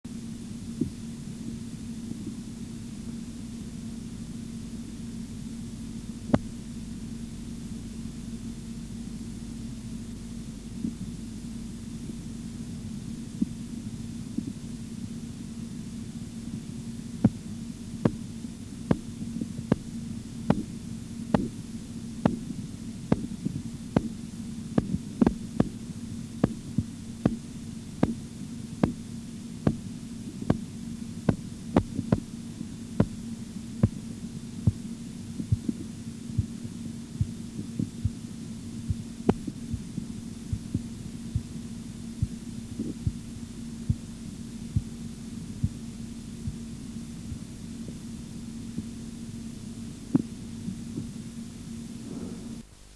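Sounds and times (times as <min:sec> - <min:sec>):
steady low hum: 0:00.0 - 0:52.9
heartbeat taps through stethoscope: 0:00.8 - 0:01.0, 0:18.9 - 0:19.9, 0:20.5 - 0:20.7, 0:21.3 - 0:21.6, 0:22.2 - 0:22.5, 0:23.1 - 0:24.2, 0:24.8 - 0:25.8, 0:26.4 - 0:27.4, 0:31.3 - 0:32.3, 0:35.4 - 0:36.6, 0:37.2 - 0:38.2, 0:38.9 - 0:41.6, 0:42.2 - 0:43.2, 0:43.8 - 0:44.1, 0:46.4 - 0:46.6, 0:47.3 - 0:48.0, 0:50.1 - 0:51.1.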